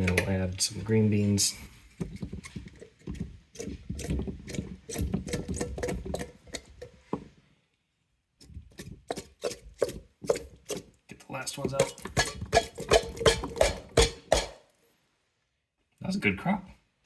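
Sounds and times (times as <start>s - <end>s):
green beans clattering: 8.4s - 14.7s.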